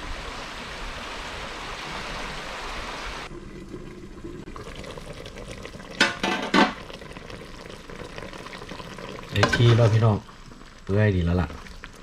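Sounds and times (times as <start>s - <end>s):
water rushing: 0.0s - 4.4s.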